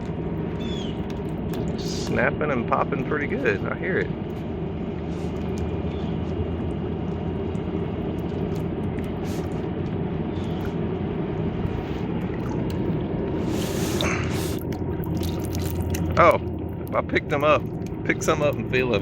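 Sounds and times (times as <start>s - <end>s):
low steady rumble: 0.0s - 19.0s
bath crackles fizzing in water: 11.4s - 19.0s.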